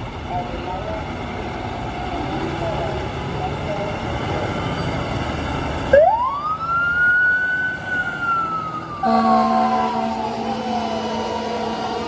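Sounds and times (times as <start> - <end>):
fire truck siren wailing: 5.8 - 12.0
fire truck air horn blasting: 9.0 - 11.2.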